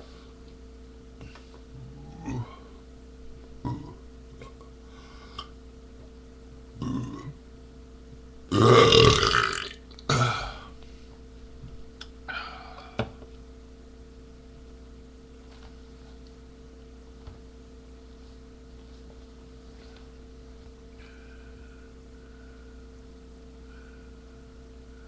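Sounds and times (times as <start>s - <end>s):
man belching loudly: 1.8s - 2.6s, 3.6s - 4.0s, 6.8s - 7.4s, 8.5s - 10.6s.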